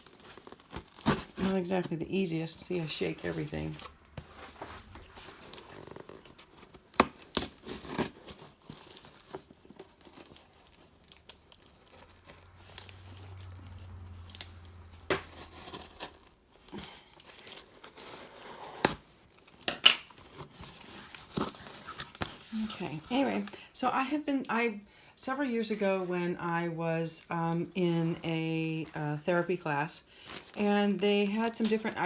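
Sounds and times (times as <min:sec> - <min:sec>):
packaging tearing and crinkling: 0:00.0 - 0:01.9, 0:03.1 - 0:23.5, 0:30.2 - 0:30.6.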